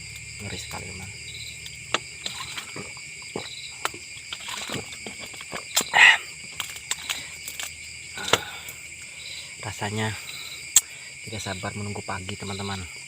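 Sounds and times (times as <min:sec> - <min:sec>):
crickets and insects chirping: 0:00.0 - 0:13.0.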